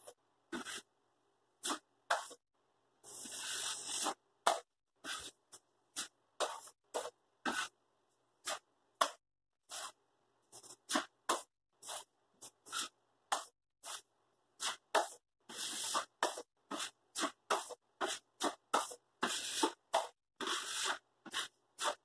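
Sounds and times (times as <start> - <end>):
drywall knife scraping compound: 0.0 - 0.9, 3.0 - 7.8, 8.4 - 22.0.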